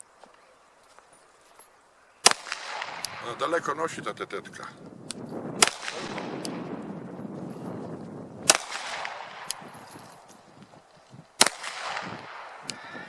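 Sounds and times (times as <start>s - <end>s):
pistol shots echoing: 2.2s - 3.7s, 5.6s - 6.8s, 8.4s - 9.8s, 11.4s - 12.7s.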